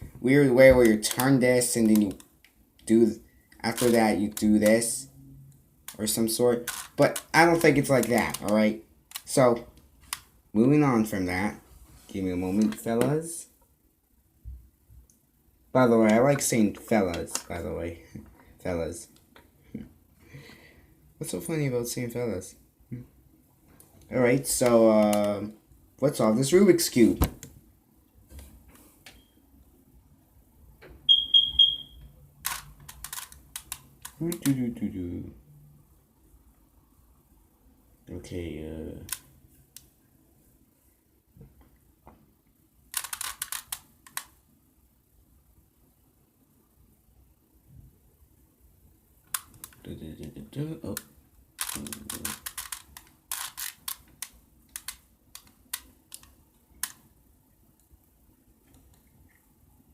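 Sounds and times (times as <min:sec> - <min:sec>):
short high electronic beeps: 0:31.1 - 0:32.0
plastic cube layers clicking: 0:32.5 - 0:34.5, 0:43.0 - 0:44.4, 0:51.0 - 0:57.1.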